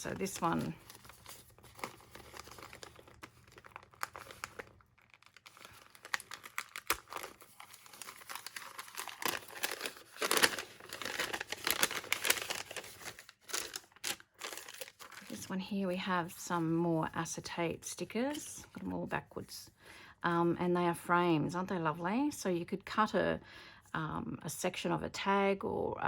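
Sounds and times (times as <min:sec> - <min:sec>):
plastic packaging crinkling: 0:00.0 - 0:15.7.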